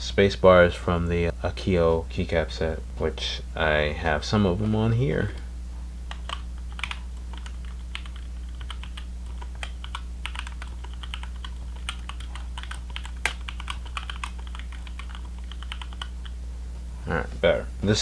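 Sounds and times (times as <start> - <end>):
steady low hum: 0.0 - 18.0
mechanical keyboard typing: 6.1 - 16.3.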